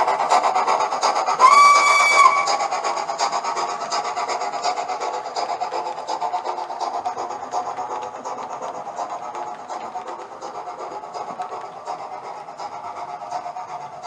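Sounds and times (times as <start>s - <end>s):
steam locomotive chuffing: 0.0s - 14.0s
locomotive whistle: 1.4s - 3.0s.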